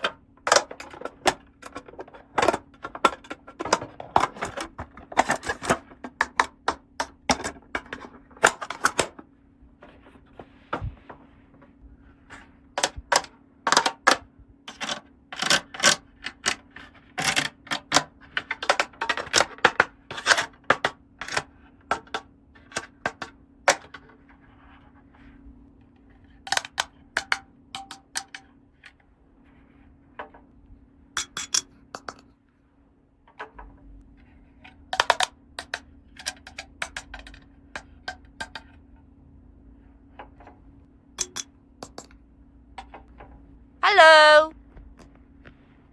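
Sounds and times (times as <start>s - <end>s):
plastic toy pieces clicking: 12.8s - 16.6s, 17.2s - 22.9s, 26.5s - 28.4s, 35.0s - 38.6s, 41.2s - 42.1s.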